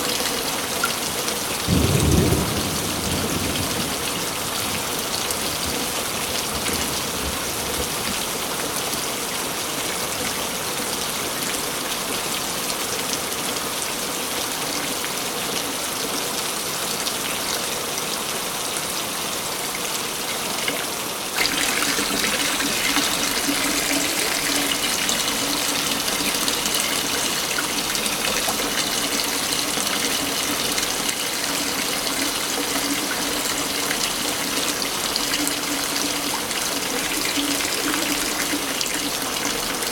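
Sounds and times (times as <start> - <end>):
waterfall rushing: 21.3 - 39.9.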